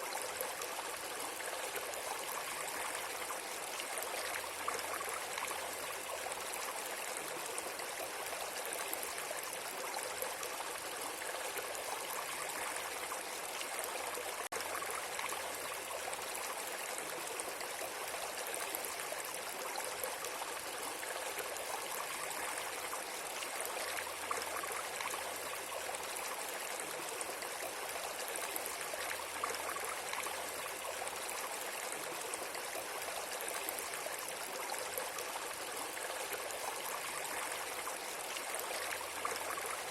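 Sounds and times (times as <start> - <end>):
flowing water trickling: 0.0 - 39.9.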